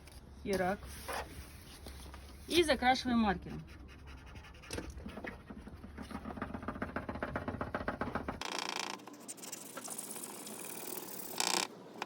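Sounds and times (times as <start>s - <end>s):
marker scribbling on tape: 3.5s - 5.4s, 9.1s - 11.4s.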